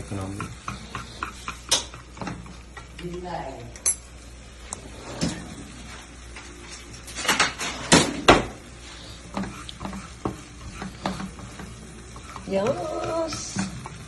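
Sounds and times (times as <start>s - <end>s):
utensils clinking against cookware: 0.1s - 4.2s, 9.3s - 14.0s.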